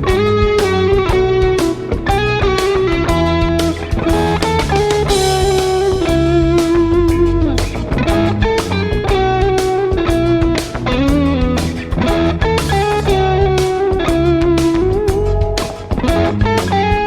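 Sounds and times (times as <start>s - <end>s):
bass: 0.0s - 17.0s
drums: 0.0s - 17.0s
electric guitar lead line: 0.0s - 17.0s.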